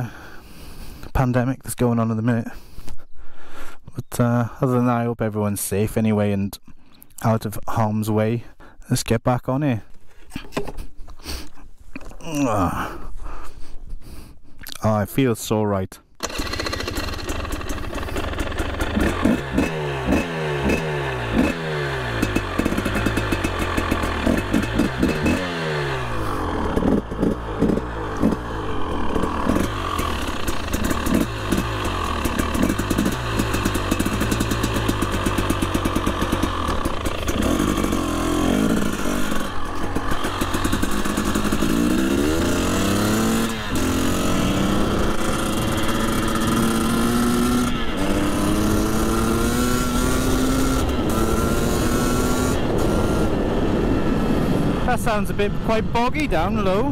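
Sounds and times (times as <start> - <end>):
motorcycle engine revving: 16.2 - 56.9.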